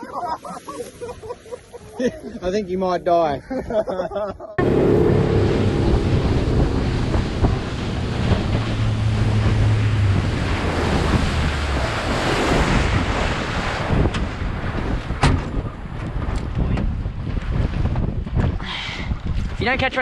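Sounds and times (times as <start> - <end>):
rushing water: 0.0 - 2.0, 4.6 - 16.3
low hum of boat: 3.5 - 20.0
wind buffeting microphone: 4.6 - 20.0.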